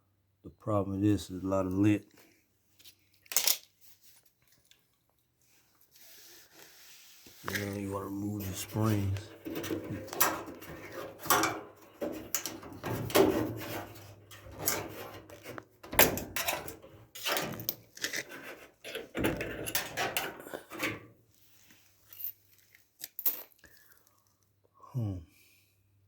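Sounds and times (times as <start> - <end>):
metal clinks and rattles: 8.4 - 21.0.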